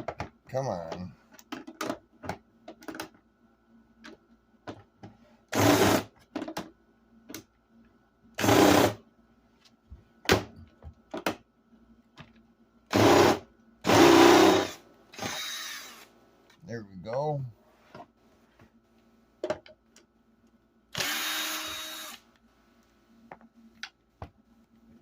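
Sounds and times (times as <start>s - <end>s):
cordless screw gun whirring: 5.5s - 6.1s, 8.4s - 9.0s, 12.9s - 16.1s, 20.9s - 22.2s.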